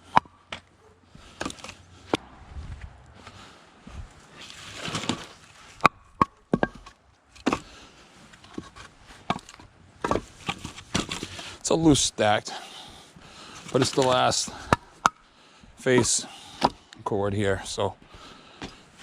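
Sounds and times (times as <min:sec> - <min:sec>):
firewood pieces clacking together: 0:00.0 - 0:02.2, 0:04.4 - 0:11.6, 0:13.4 - 0:15.2
wood scraping and shuffling: 0:00.5 - 0:14.8.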